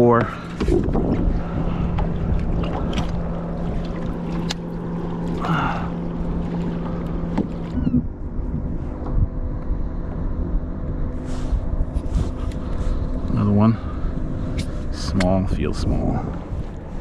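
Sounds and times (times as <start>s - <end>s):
water against kayak hull: 0.0s - 13.3s
steady low hum: 0.0s - 17.0s
wind on microphone: 0.6s - 4.4s, 6.9s - 17.0s.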